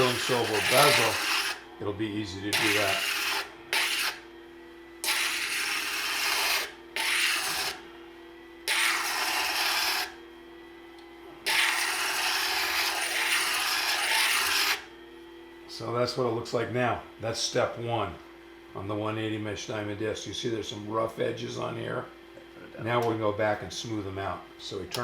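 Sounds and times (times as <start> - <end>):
stone grinding hiss: 0.0 - 1.6, 2.5 - 4.2, 5.0 - 7.8, 8.7 - 10.1, 11.5 - 14.8
grinder motor running: 0.0 - 4.2, 5.0 - 8.0, 8.6 - 10.2, 11.4 - 14.9.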